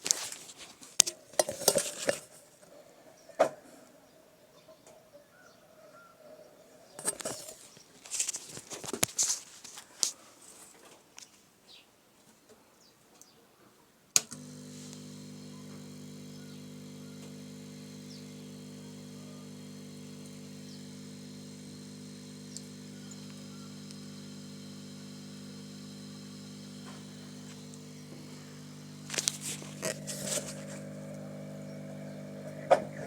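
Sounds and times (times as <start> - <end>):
electric motor hum: 14.2 - 33.0.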